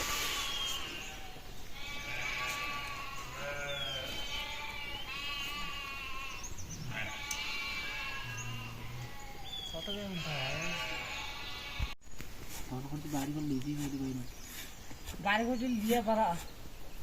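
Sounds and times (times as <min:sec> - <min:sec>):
sheep bleating: 0:00.5 - 0:12.0.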